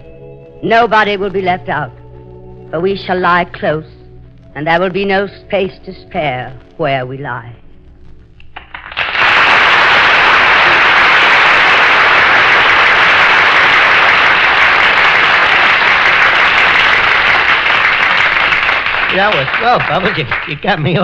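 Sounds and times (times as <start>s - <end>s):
studio audience applauding: 8.5s - 21.0s.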